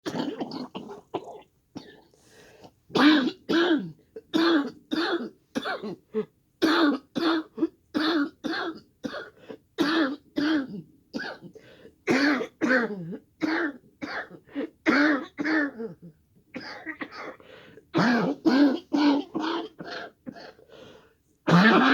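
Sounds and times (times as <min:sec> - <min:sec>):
person coughing hard: 0:00.0 - 0:02.1, 0:02.9 - 0:16.0, 0:16.6 - 0:17.4, 0:18.0 - 0:20.6, 0:21.5 - 0:21.9.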